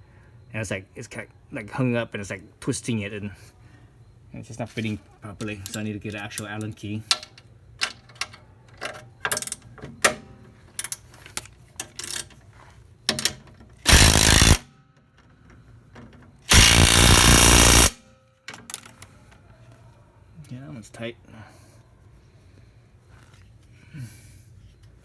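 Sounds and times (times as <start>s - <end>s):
impact wrench hammering: 13.9s - 14.6s, 16.5s - 18.0s.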